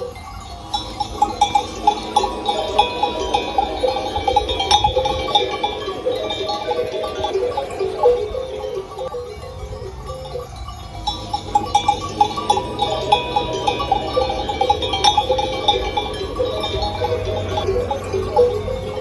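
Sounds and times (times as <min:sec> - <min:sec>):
sheep bells clinking: 0:00.0 - 0:19.0.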